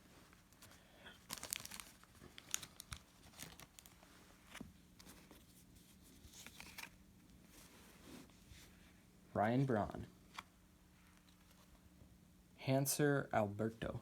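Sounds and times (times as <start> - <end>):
foil wrapper crinkling and tearing: 0.5 - 4.1.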